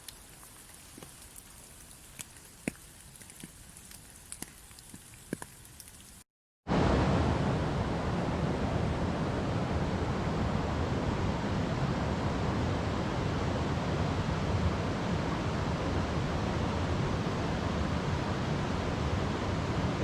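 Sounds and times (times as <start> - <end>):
running water rushing: 0.0 - 6.2.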